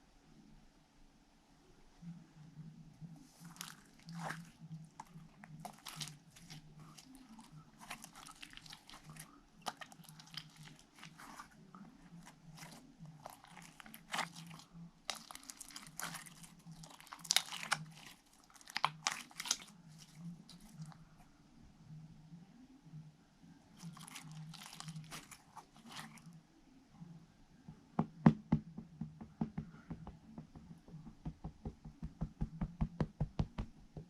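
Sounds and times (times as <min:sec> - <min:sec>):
slime crackling and popping: 0:03.5 - 0:21.0, 0:23.8 - 0:26.2.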